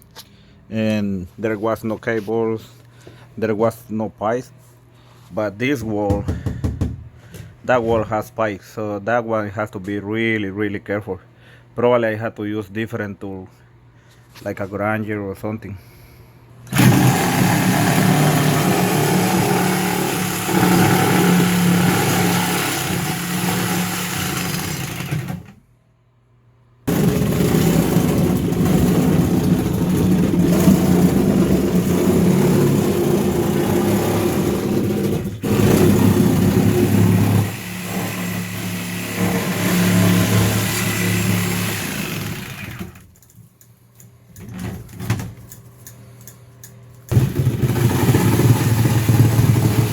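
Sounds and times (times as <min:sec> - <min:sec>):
power saw cutting fiberglass: 0:16.7 - 0:25.6, 0:26.9 - 0:43.1, 0:47.1 - 0:49.9.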